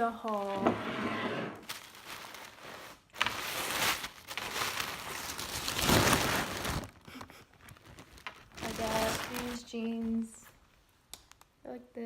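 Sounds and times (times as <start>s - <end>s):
shopping bag rustling: 1.6s - 10.6s
clothing being handled: 1.6s - 10.8s.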